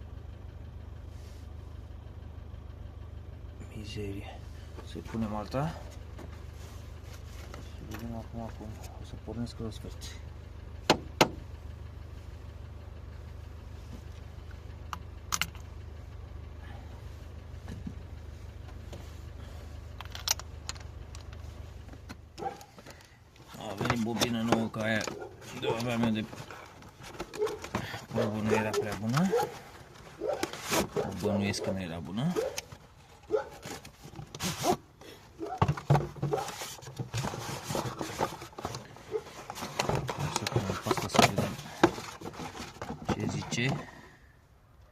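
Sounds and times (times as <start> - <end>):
car engine idling: 0.0 - 44.9.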